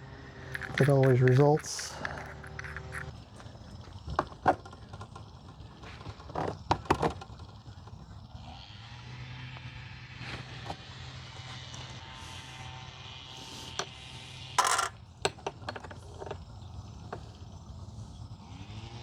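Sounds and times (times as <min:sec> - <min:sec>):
small parts clicking and clinking: 0:00.4 - 0:06.1, 0:14.6 - 0:17.4.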